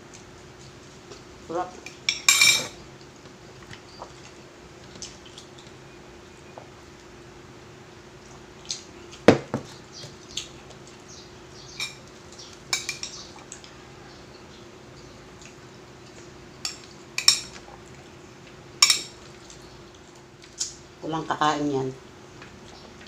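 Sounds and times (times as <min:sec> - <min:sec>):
utensils clinking on plates: 0:02.1 - 0:02.8, 0:11.7 - 0:12.0, 0:12.7 - 0:13.3.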